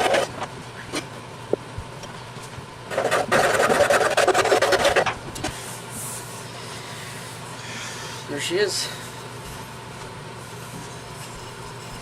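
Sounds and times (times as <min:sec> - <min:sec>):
abrasive rasping on wood: 0:02.9 - 0:05.1.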